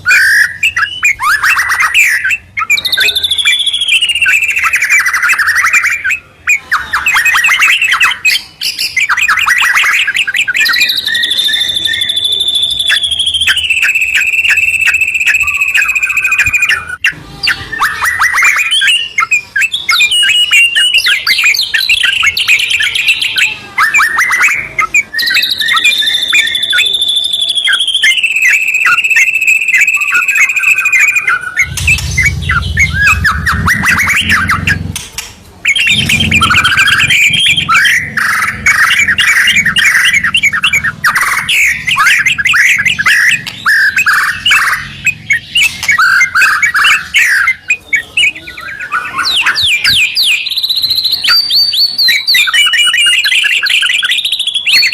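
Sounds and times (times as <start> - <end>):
birds singing trills and whistles: 0.0 - 54.9
long descending bird whistle: 9.4 - 17.0, 23.9 - 34.7
low rumble: 31.6 - 35.1, 35.9 - 41.2.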